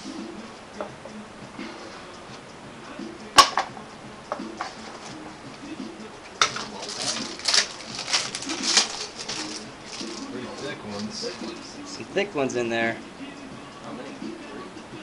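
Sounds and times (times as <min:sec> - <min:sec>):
packaging snapping open: 0:06.5 - 0:09.6
packaging crinkling and rustling: 0:06.5 - 0:11.1.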